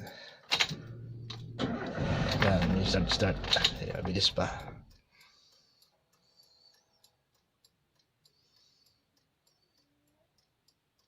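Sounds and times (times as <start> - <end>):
faint ticks: 3.9 - 11.0.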